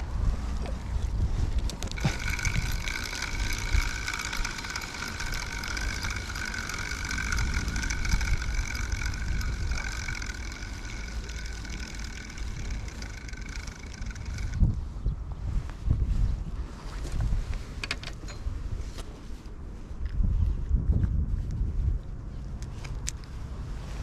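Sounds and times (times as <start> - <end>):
wind on microphone: 0.0 - 24.0
motor whining: 1.8 - 14.8.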